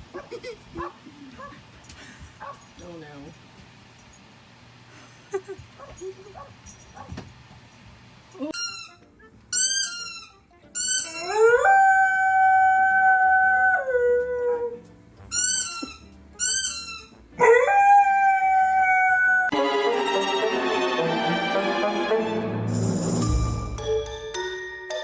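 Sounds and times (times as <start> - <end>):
music: 8.6 - 11.9, 14.0 - 17.4, 19.5 - 25.0
dog howling: 11.2 - 14.8, 17.4 - 19.5.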